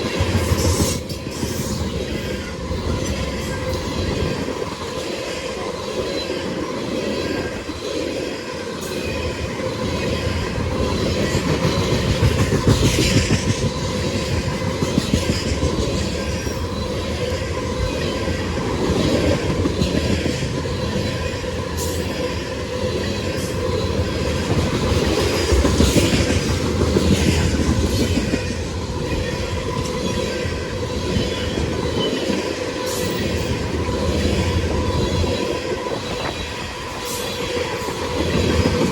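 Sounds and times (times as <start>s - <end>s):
train wheels clacking over rail joints: 10.6s - 16.6s.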